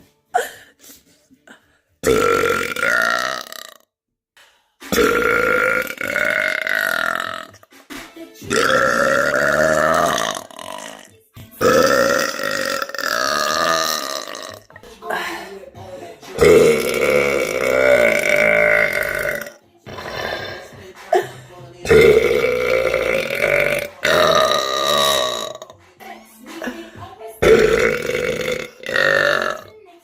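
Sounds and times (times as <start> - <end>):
woman burping loudly: 2.0 - 3.8, 5.0 - 7.6, 8.4 - 15.5, 16.4 - 25.8, 27.4 - 29.8.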